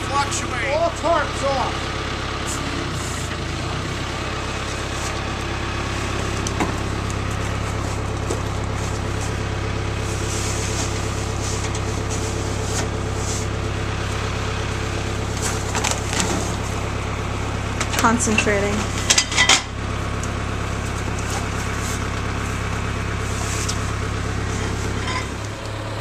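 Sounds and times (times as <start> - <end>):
backhoe engine idling: 0.0 - 26.0
knocks and clanks: 17.8 - 19.8.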